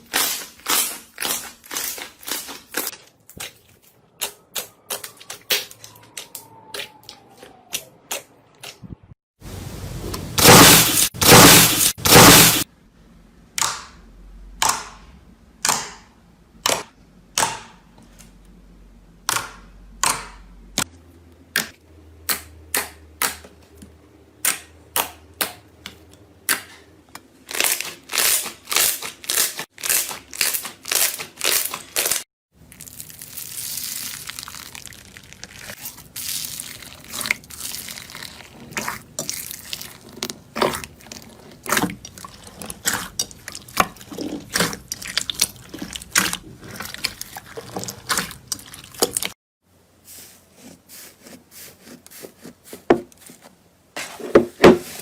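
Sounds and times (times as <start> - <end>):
slime crunching and popping: 27.5 - 49.3.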